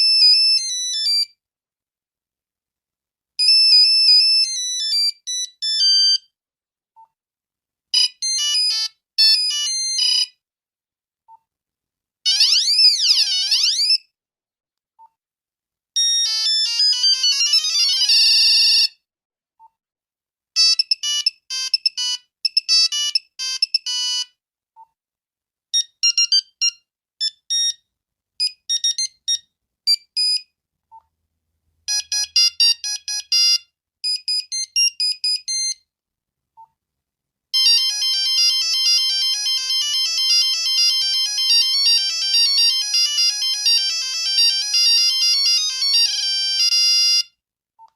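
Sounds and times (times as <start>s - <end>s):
monophonic phone ringtone melodies: 8.0s - 10.3s, 16.0s - 18.9s, 20.6s - 24.4s, 28.4s - 30.4s, 31.9s - 35.8s, 37.6s - 47.4s.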